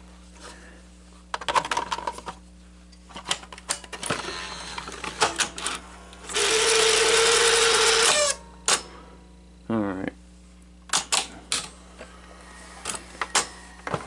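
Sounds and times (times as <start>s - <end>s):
video recorder motor whir: 4.1s - 8.4s.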